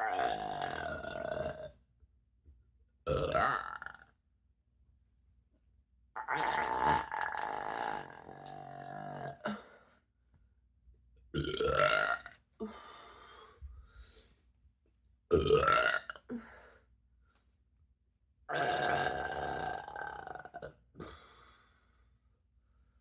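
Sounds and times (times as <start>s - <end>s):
woman burping: 15.3s - 16.4s, 18.5s - 20.6s.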